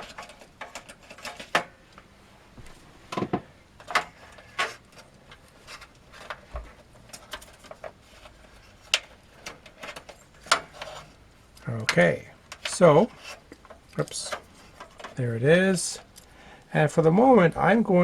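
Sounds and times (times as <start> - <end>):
power cable rustling and tapping: 0.0 - 15.2.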